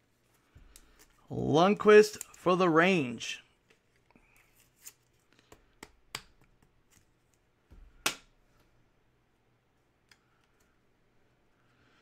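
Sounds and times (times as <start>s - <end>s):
cards clicking: 2.1s - 2.4s.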